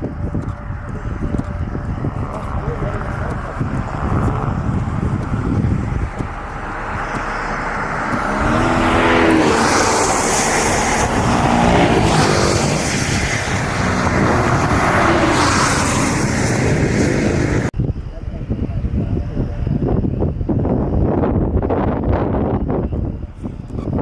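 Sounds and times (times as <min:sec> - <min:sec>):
vehicle engine accelerating: 0:00.0 - 0:17.8
road and wind noise: 0:00.0 - 0:24.0.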